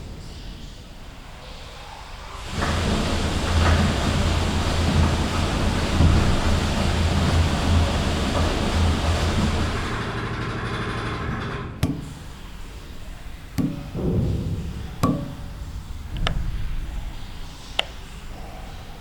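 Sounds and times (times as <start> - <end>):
low hull rumble and hum: 2.5 - 19.0
metallic knocks echoing: 9.9 - 17.4.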